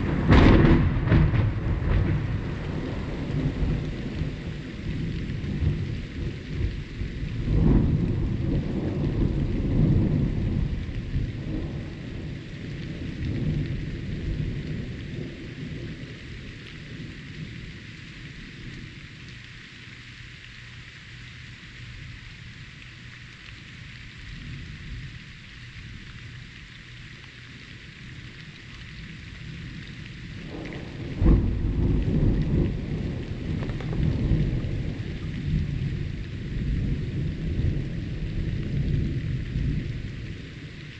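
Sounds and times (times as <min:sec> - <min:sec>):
sharp thunderclap: 0:00.0 - 0:04.6, 0:30.4 - 0:39.8
rolling thunder: 0:00.0 - 0:17.7, 0:29.0 - 0:40.9
rain hiss: 0:00.0 - 0:40.9.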